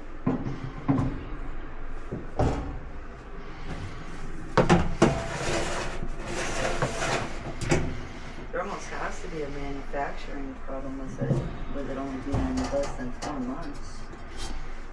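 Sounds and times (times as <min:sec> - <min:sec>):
knocks and clunks of dryer parts: 0:00.0 - 0:08.6, 0:11.1 - 0:14.8
scraping rustle: 0:00.6 - 0:10.0.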